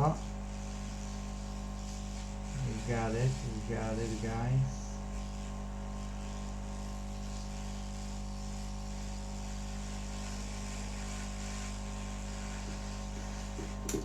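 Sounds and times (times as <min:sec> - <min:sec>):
electrical hum: 0:00.0 - 0:14.0
hot air blowing hiss: 0:00.0 - 0:14.0.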